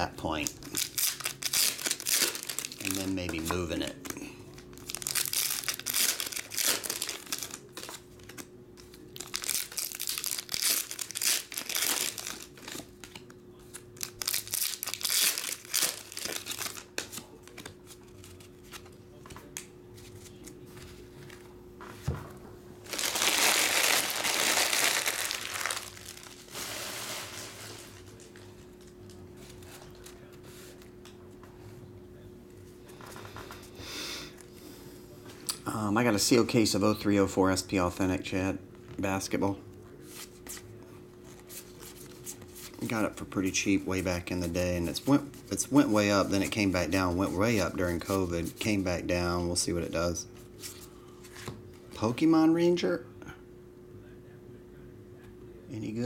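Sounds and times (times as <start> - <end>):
faint steady hum: 0.0 - 56.0
foil wrappers crinkling and tearing: 0.2 - 18.9, 22.8 - 28.5.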